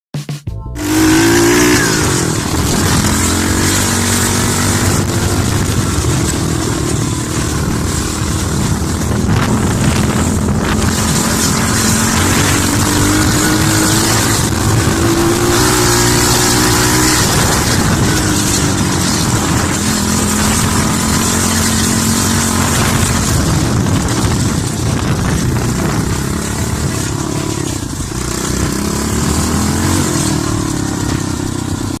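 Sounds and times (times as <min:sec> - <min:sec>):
dirt bike engine revving: 0:00.8 - 0:32.0.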